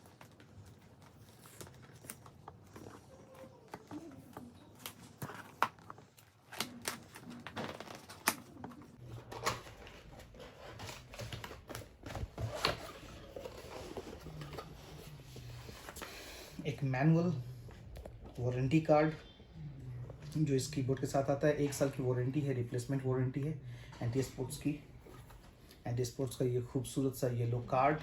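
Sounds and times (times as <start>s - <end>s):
rustles of cardboard and paper: 0.0s - 16.1s.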